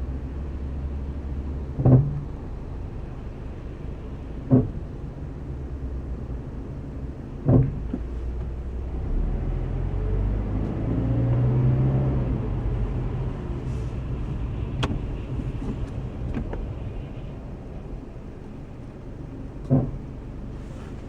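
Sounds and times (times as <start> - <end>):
car engine pulling away: 5.0 - 21.0
brakes creaking: 6.7 - 21.0.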